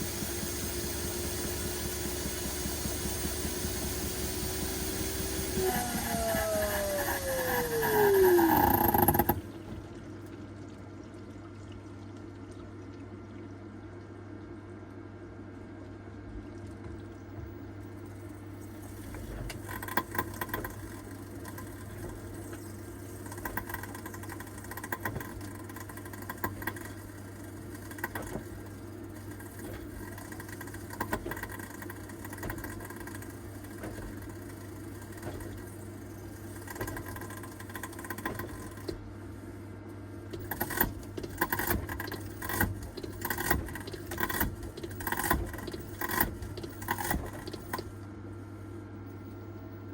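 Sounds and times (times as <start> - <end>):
washer-dryer humming: 0.0 - 11.6, 16.3 - 49.9
irregular clicks and knocks: 40.3 - 47.9.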